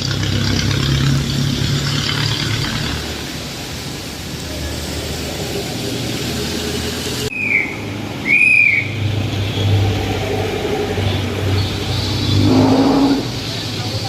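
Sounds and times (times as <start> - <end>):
low engine hum: 0.0 - 14.0
rain and road hiss: 0.0 - 14.0
high whistle-like tones: 7.3 - 9.0.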